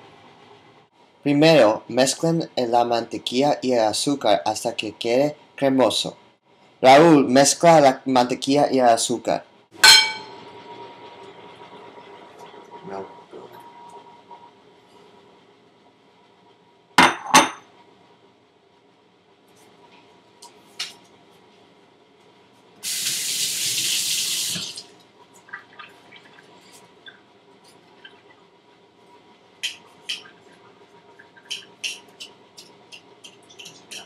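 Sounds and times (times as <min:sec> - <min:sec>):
kitchen utensils clinking: 0:09.8 - 0:10.4
water tap running: 0:22.8 - 0:27.2.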